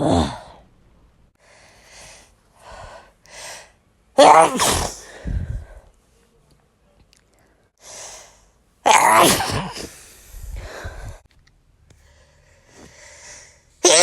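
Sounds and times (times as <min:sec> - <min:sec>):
quiet gasping breaths: 0:01.4 - 0:03.9, 0:05.0 - 0:08.6, 0:09.8 - 0:11.3, 0:11.9 - 0:13.8
person sneezing: 0:04.2 - 0:05.3, 0:08.9 - 0:11.0.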